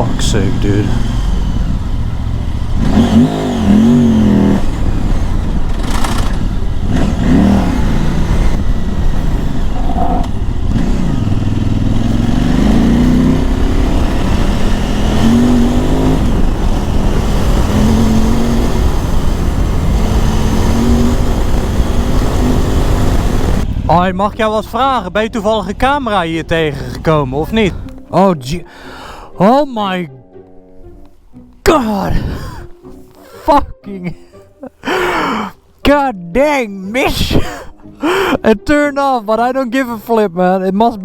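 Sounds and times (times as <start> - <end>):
motorcycle engine revving: 0.0 - 28.2.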